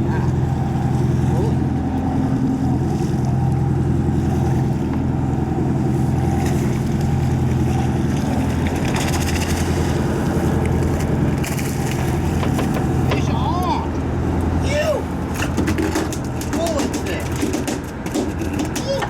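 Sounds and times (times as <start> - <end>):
boat engine droning: 0.0 - 19.0
light clicks and knocks: 12.3 - 13.3.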